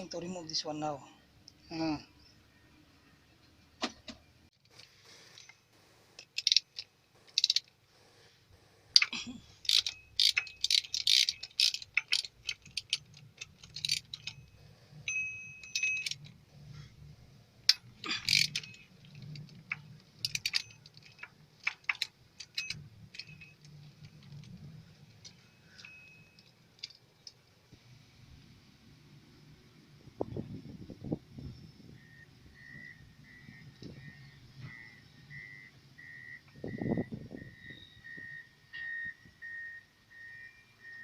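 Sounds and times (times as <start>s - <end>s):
metal tools clinking on engine: 9.0s - 16.7s, 17.6s - 27.4s.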